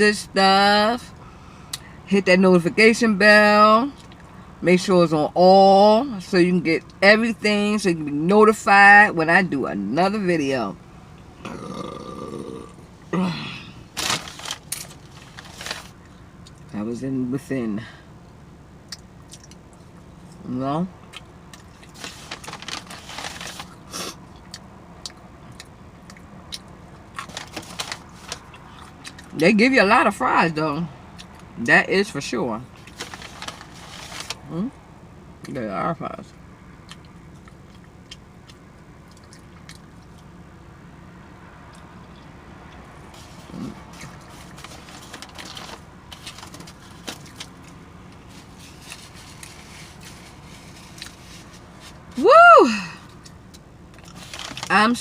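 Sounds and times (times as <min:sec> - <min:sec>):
low steady rumble: 0:00.0 - 0:55.0
chewing and lip smacking: 0:18.8 - 0:20.4, 0:24.2 - 0:27.4, 0:36.8 - 0:40.3.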